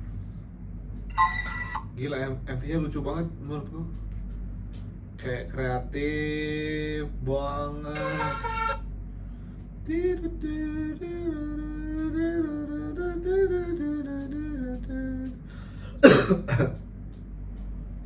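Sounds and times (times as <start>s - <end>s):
person humming: 7.9s - 8.8s
person coughing: 16.0s - 16.8s.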